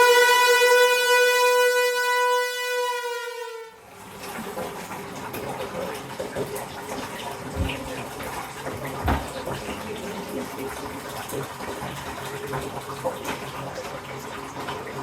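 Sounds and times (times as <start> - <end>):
bath tap water rushing: 0.0 - 15.0.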